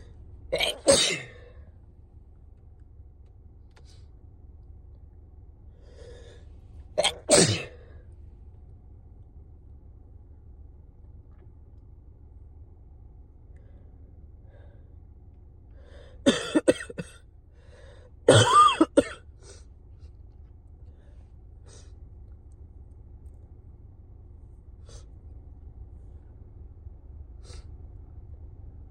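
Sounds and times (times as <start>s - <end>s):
person sneezing: 0.6s - 1.4s, 7.0s - 7.8s.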